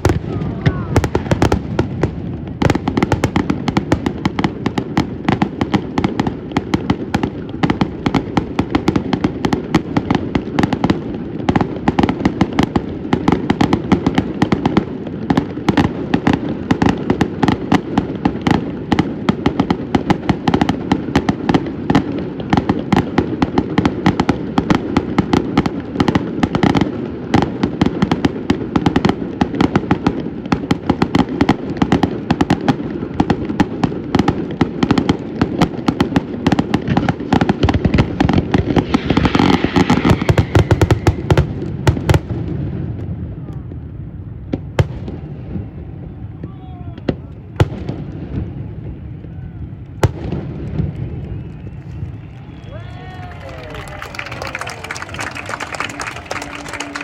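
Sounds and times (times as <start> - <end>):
deep fireworks booms: 0.0 - 54.6
fireworks bangs and crackles: 0.0 - 57.0.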